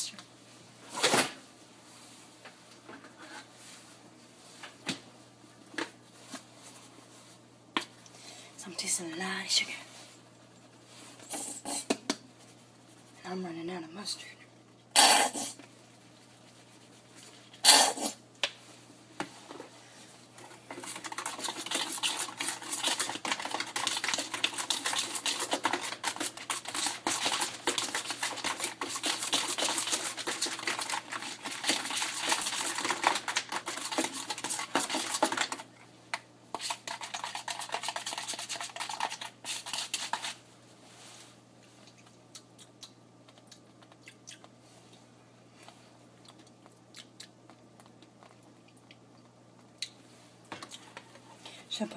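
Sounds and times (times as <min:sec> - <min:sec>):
spoon stirring in a bowl: 0:20.4 - 0:40.4.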